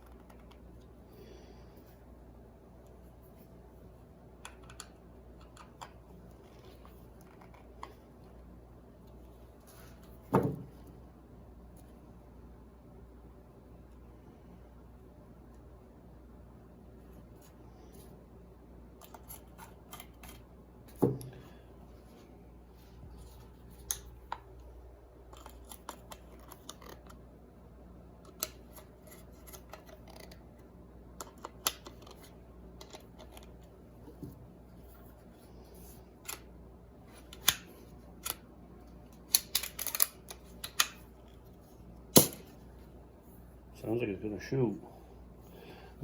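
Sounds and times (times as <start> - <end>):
gun parts clicking: 39.3 - 41.0.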